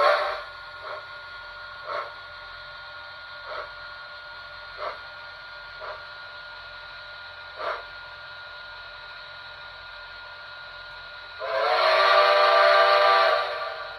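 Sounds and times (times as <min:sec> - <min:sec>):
steam locomotive whistle: 0:00.0 - 0:00.5, 0:11.4 - 0:13.9
model train humming: 0:00.0 - 0:13.9.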